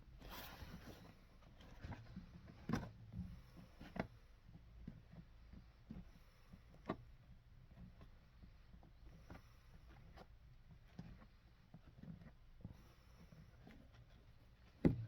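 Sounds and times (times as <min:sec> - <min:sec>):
knocks and light taps: 0:14.6 - 0:15.0.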